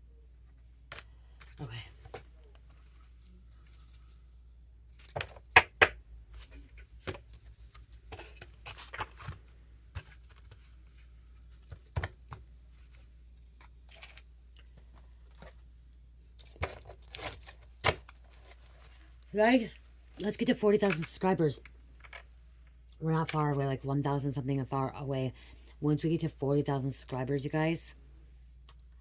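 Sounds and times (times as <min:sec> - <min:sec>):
objects rustling and crinkling: 0:00.4 - 0:05.5, 0:06.2 - 0:12.0, 0:16.4 - 0:20.1.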